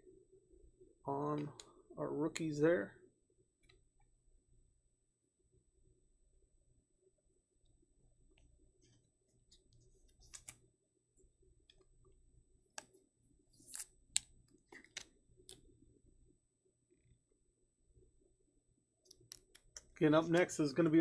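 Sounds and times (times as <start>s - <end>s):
trading card clicks and rustles: 9.5s - 10.6s.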